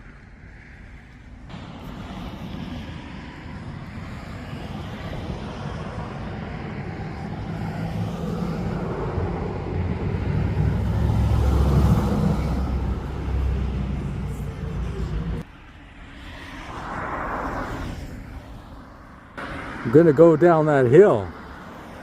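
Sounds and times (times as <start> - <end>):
vehicle engine passing by: 1.5 - 15.5.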